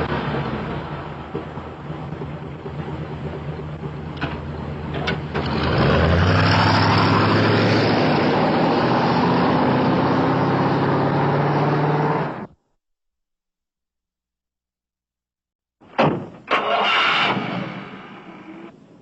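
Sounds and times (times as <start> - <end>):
car engine revving: 4.8 - 12.5.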